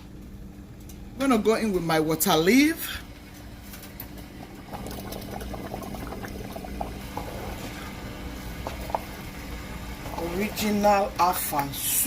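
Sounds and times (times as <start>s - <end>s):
faint steady hum: 0.0s - 12.0s
pot bubbling: 4.0s - 11.2s.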